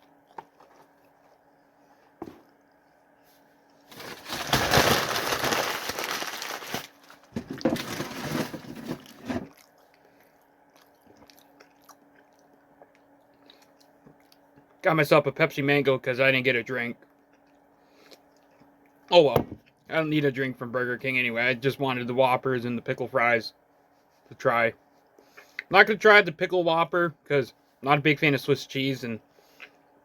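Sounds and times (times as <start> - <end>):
person chewing crunchy food: 9.5 - 14.6.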